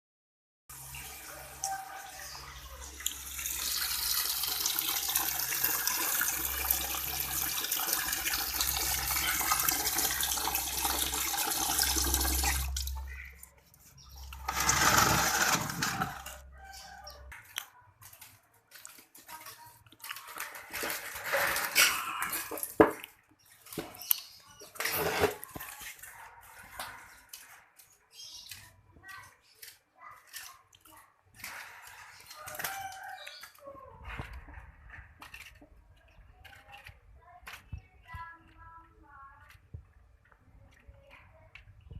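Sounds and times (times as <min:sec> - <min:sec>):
water running into a bucket: 0:00.7 - 0:13.4, 0:14.3 - 0:16.4.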